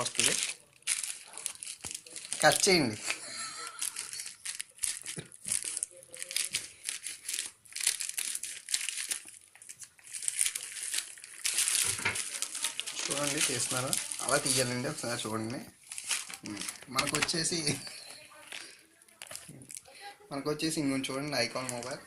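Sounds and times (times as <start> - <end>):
plastic packaging crinkling: 0.0 - 20.0, 20.6 - 22.0.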